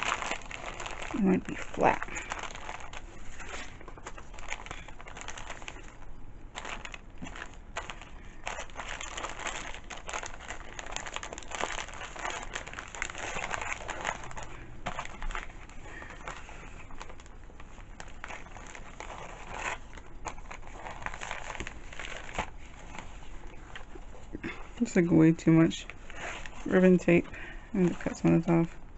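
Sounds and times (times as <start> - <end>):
wrapping materials crinkling: 0.0 - 28.9.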